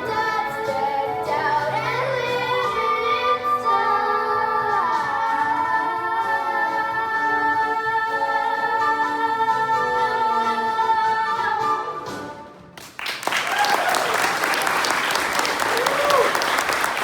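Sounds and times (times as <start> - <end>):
young voices singing: 0.0 - 12.4
applause: 12.8 - 17.0.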